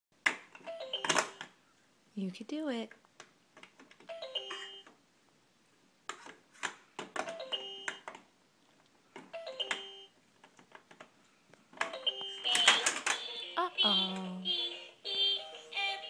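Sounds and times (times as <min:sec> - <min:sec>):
toy playing falling chime beeps: 0:04.1 - 0:04.9, 0:07.3 - 0:08.0, 0:09.4 - 0:10.1.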